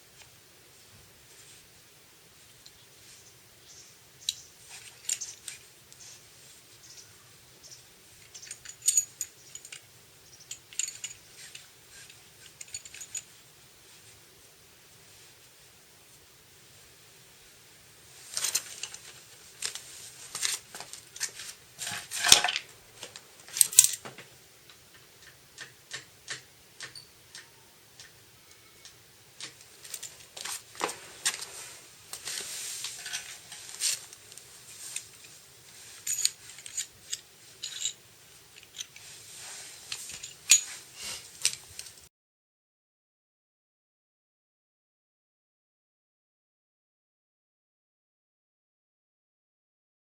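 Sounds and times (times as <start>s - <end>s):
small metal objects clinking: 4.3s - 5.6s, 8.2s - 13.3s, 34.8s - 38.0s.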